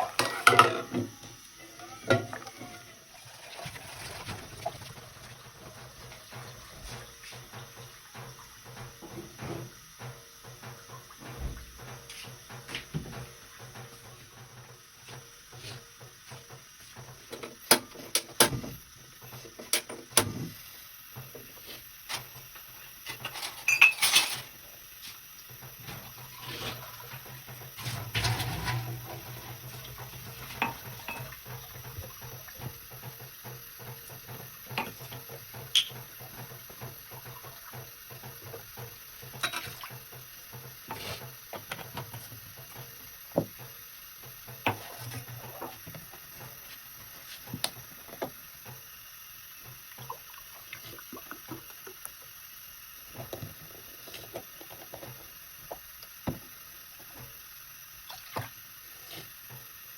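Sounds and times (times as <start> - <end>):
dishes and utensils clinking: 0.0 - 2.9, 23.1 - 24.5, 27.8 - 31.4.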